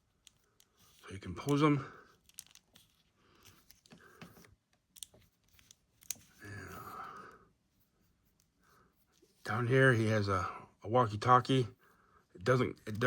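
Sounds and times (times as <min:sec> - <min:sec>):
plastic figure joints clicking: 0:02.2 - 0:02.9
soft breathy noise: 0:06.2 - 0:09.5, 0:11.7 - 0:12.4.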